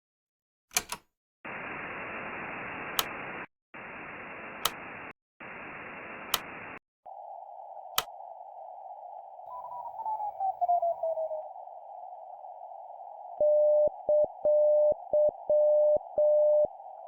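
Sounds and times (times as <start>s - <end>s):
sharp clicks: 0.7s - 1.1s, 2.9s - 3.3s, 4.6s - 5.0s, 6.2s - 6.7s, 8.0s - 8.2s
radio static hiss: 1.5s - 17.0s.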